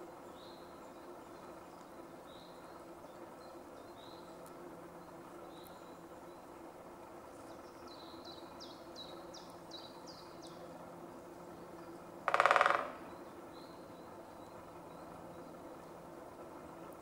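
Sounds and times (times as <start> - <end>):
woodpecker drumming: 11.8 - 13.3.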